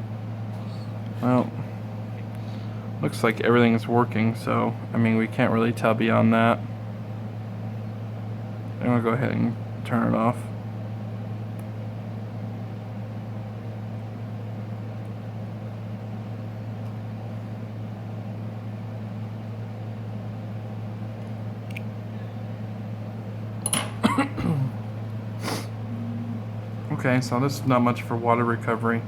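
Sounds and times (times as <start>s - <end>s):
low machine hum: 0.0s - 29.0s.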